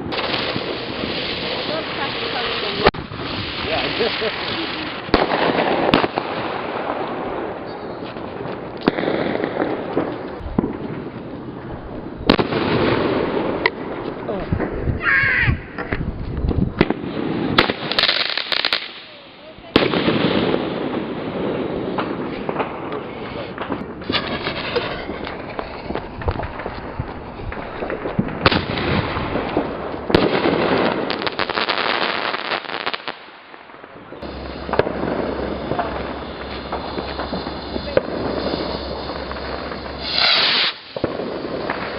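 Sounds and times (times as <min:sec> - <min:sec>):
fireworks bangs: 0:00.0 - 0:41.9
rough hiss: 0:34.2 - 0:41.9.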